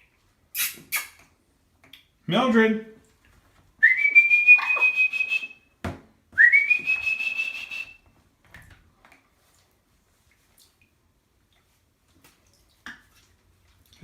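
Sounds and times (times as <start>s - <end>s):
parrot whistling: 3.8s - 5.5s, 6.4s - 8.0s.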